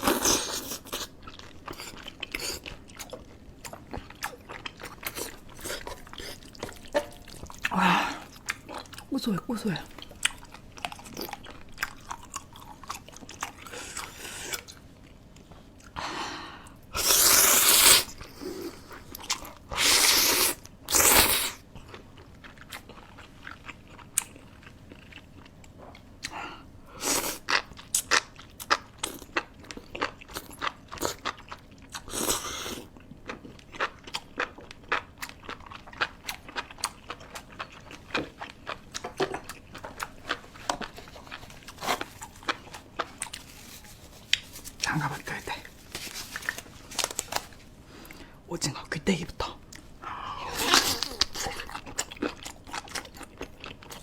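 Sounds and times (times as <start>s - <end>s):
crunchy chewing: 27.1s - 48.2s.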